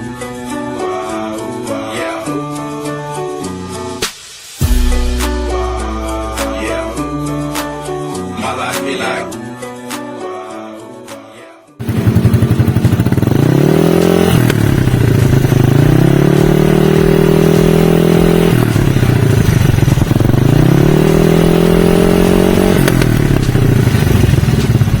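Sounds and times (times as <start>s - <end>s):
motorcycle engine revving: 11.8s - 25.0s.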